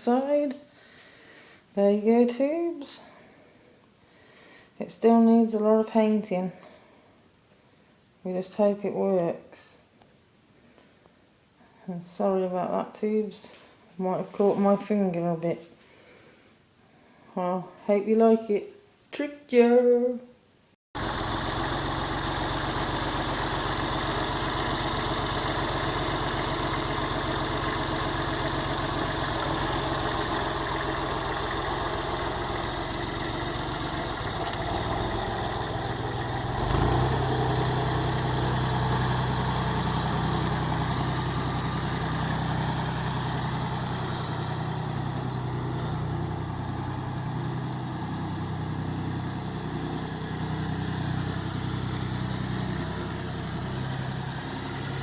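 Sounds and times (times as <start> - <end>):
engine idling: 21.0 - 55.0.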